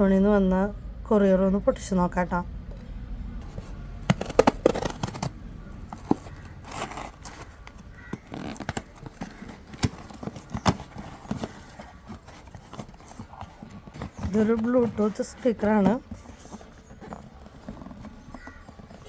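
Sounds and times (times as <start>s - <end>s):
sharp clicks and scrapes: 3.4s - 19.0s
packaging tearing and rustling: 4.0s - 19.0s.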